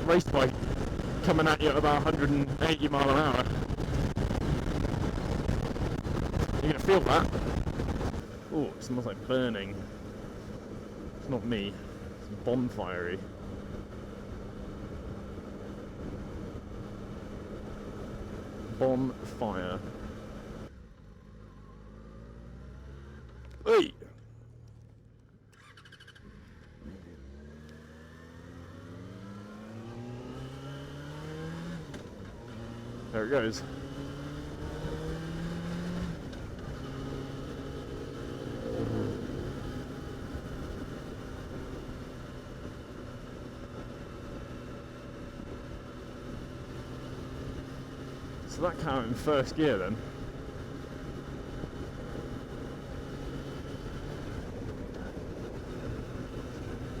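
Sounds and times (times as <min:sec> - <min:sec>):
motorcycle engine pulling: 0:25.5 - 0:26.8.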